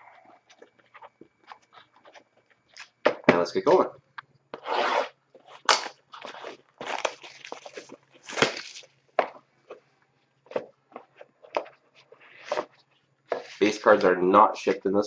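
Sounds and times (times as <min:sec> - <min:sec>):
cardboard box being torn open: 0:06.2 - 0:08.8.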